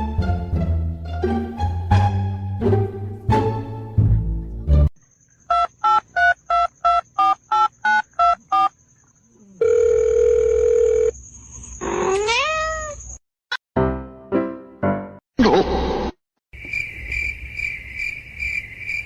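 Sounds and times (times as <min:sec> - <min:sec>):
cat meowing: 0:12.0 - 0:13.1.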